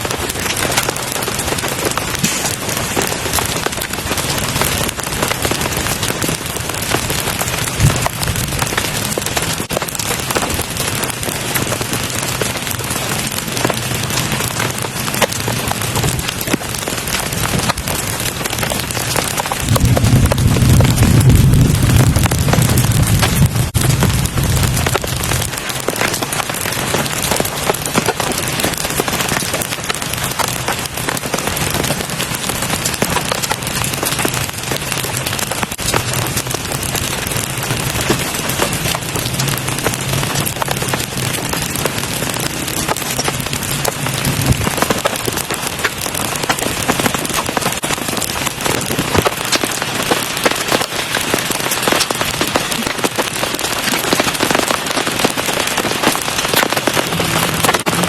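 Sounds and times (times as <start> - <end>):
heavy rain falling: 0.0 - 58.0
low steady rumble: 19.6 - 25.4.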